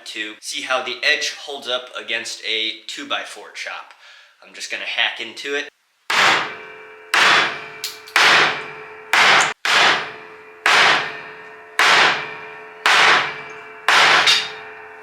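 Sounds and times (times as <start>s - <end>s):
cleaver chopping into wood: 6.1s - 6.5s, 7.2s - 7.6s, 8.2s - 8.6s, 9.2s - 10.1s, 10.7s - 11.1s, 11.8s - 12.2s, 12.9s - 14.3s.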